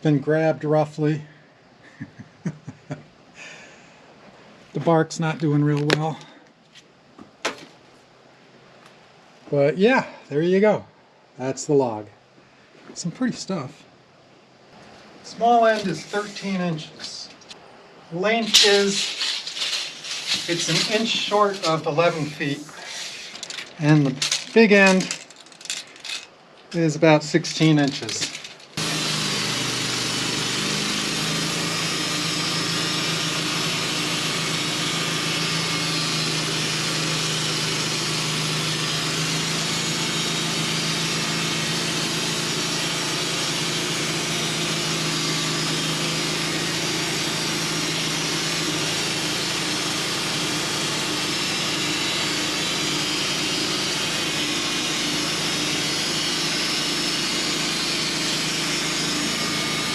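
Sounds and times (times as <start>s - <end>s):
loud even hiss: 15.3s - 17.2s, 18.1s - 25.2s
sawmill engine running: 15.3s - 17.4s, 18.2s - 26.3s, 27.6s - 59.9s.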